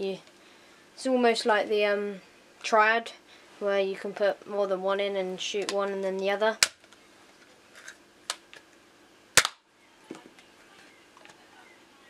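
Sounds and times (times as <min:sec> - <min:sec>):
toy blaster firing pop: 0:09.4 - 0:09.6.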